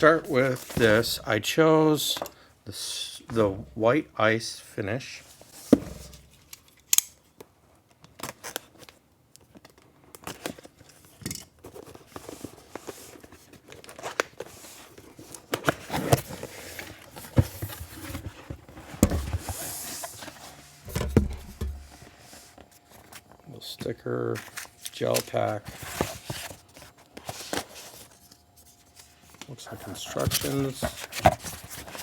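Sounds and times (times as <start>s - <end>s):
cardboard tearing and crinkling: 29.9s - 32.0s.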